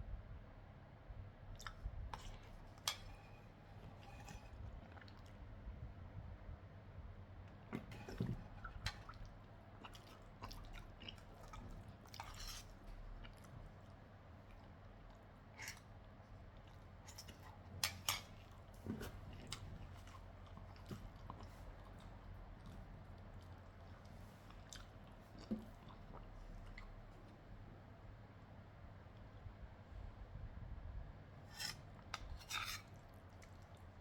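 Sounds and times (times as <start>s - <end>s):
person chewing noodles: 8.7s - 27.4s, 32.8s - 34.0s.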